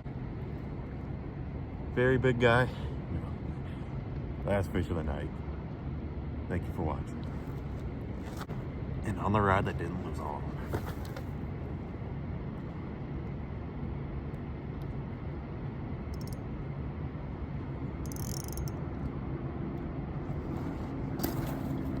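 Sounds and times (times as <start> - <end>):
vehicle engine and road noise: 0.0 - 22.0.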